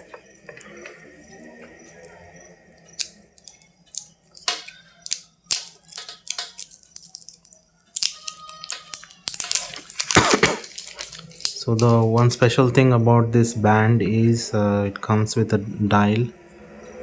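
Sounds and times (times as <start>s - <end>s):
packaging rustle: 4.4s - 12.3s.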